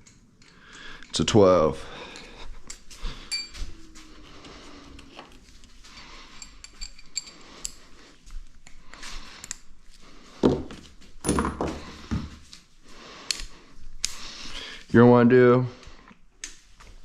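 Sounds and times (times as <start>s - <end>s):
hand tools clinking: 0.0s - 1.4s, 2.0s - 3.9s, 4.9s - 9.7s.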